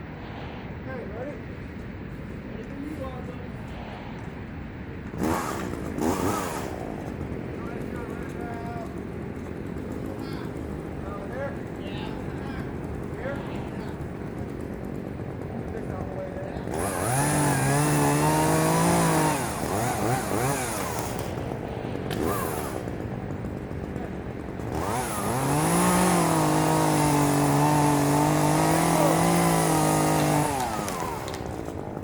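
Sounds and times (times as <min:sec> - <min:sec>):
chainsaw engine revving: 0:05.1 - 0:32.0.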